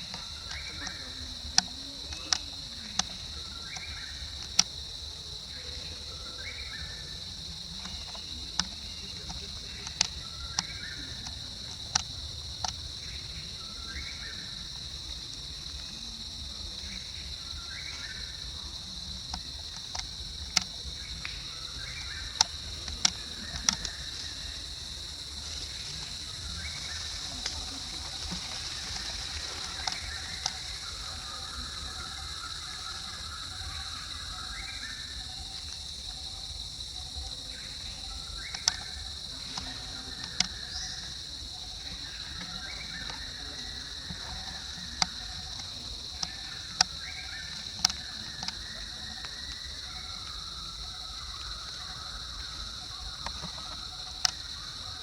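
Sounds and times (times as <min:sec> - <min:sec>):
high-pitched insect chorus: 0:00.0 - 0:55.0
sharp clicks: 0:22.0 - 0:24.3.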